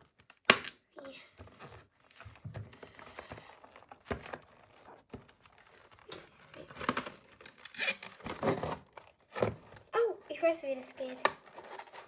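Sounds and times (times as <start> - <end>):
packaging rustling and crinkling: 1.3 - 12.0
packaging tearing: 3.6 - 9.8.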